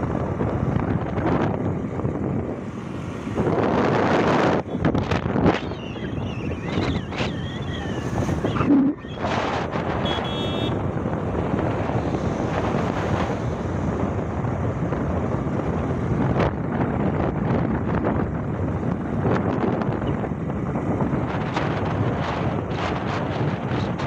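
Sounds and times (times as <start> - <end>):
moving vehicle rumble: 0.0 - 24.0
wind buffeting microphone: 0.0 - 24.0.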